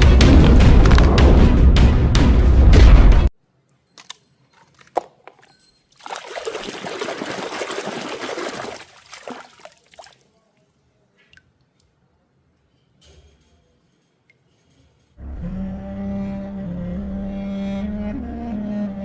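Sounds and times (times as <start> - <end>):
water pouring and splashing: 4.5 - 10.3.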